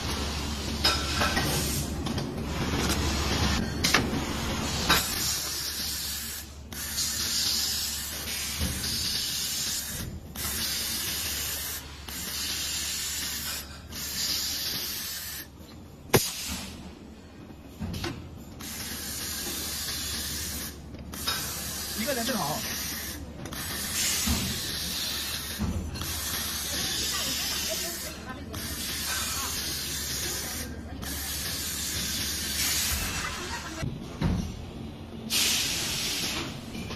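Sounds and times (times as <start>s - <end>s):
laser welding machine hissing: 4.2s - 16.8s, 18.6s - 33.8s, 35.3s - 36.6s.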